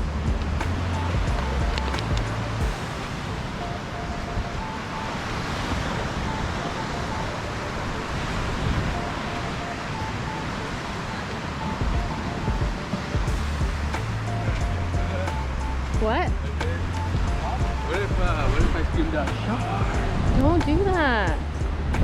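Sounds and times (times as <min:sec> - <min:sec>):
wind rumbling on microphone: 0:00.0 - 0:22.0
ocean surf washing on shore: 0:00.8 - 0:14.6.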